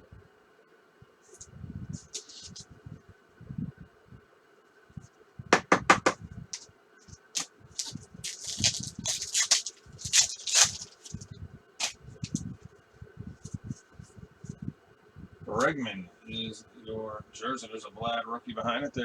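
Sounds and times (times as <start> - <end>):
cards sliding and rustling: 1.3 - 2.7, 7.0 - 11.2.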